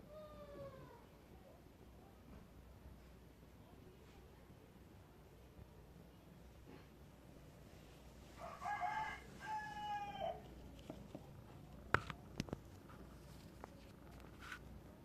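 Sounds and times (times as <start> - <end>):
rooster crowing: 8.4 - 10.5.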